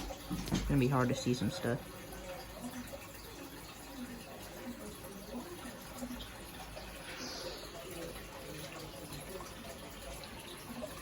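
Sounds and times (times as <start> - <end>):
water trickling in a fish tank: 0.0 - 11.0.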